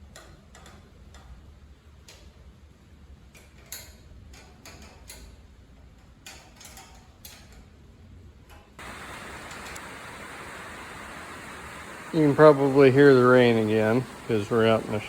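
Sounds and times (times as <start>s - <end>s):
rain on a shed roof: 8.8s - 15.0s.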